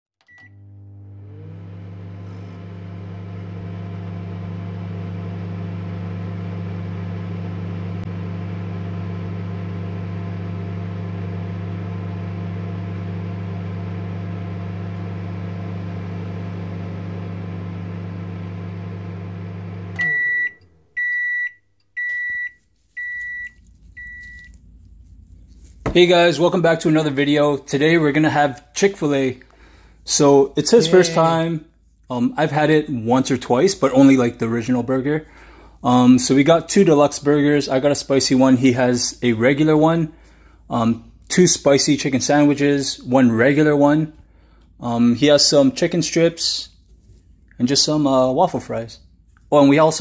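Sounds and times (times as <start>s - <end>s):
microwave oven humming: 0.2s - 21.4s, 23.0s - 25.5s
microwave beeping: 0.2s - 24.6s.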